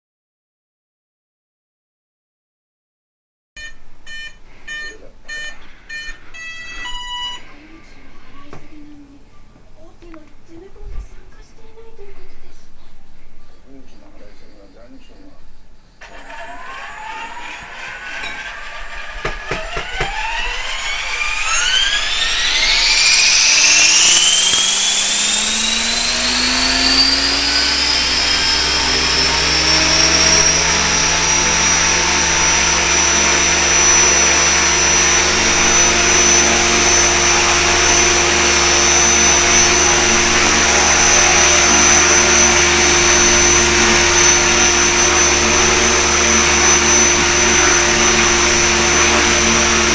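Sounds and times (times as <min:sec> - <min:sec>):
electric helicopter motor whine: 0:04.3 - 0:09.0, 0:16.0 - 0:49.9.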